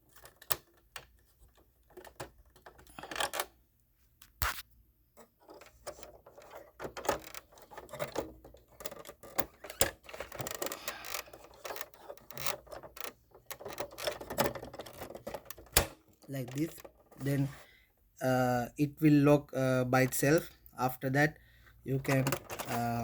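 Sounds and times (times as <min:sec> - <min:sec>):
ink cartridge handling noise: 0:05.2 - 0:17.6, 0:21.9 - 0:23.0.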